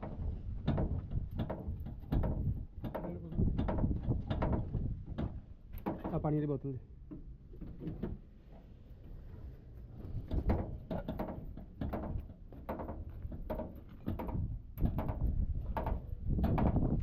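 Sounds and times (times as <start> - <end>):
irregular knocks and thuds: 0.0 - 6.3, 10.0 - 17.0.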